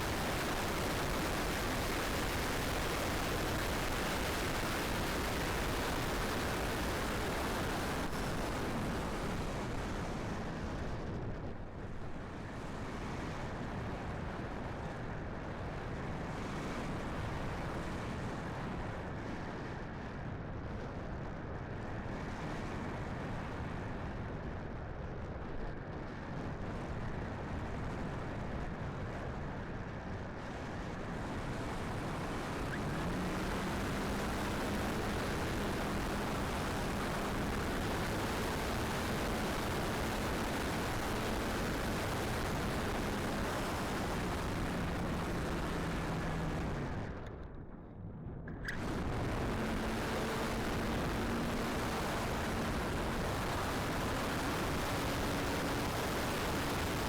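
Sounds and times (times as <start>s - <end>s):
faint steady hum: 0.0s - 10.4s, 30.4s - 57.0s
gusty wind buffeting microphone: 30.3s - 57.0s.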